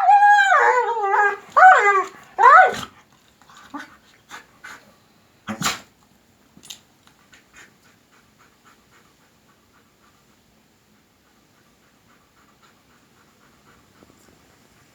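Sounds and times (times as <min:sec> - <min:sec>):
dog panting softly: 0:03.4 - 0:05.0, 0:07.1 - 0:14.9.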